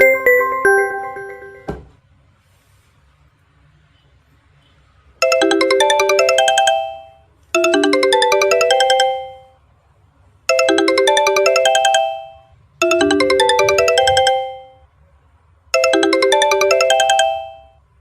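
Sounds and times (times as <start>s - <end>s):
electronic bell-like ringtone: 0.0s - 1.8s, 5.2s - 9.6s, 10.5s - 14.9s, 15.8s - 18.0s.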